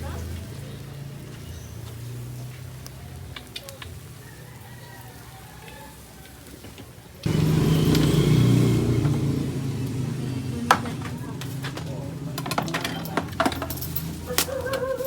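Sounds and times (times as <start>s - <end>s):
motor engine running: 7.2s - 14.8s
faint background voices: 9.0s - 15.0s.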